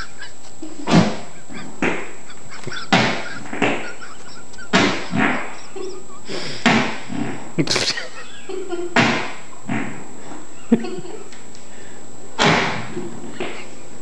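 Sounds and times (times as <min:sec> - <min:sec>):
fart-like air blasts: 0:00.8 - 0:02.2, 0:02.9 - 0:03.9, 0:04.7 - 0:05.6, 0:06.2 - 0:08.0, 0:08.9 - 0:10.4, 0:12.4 - 0:13.6.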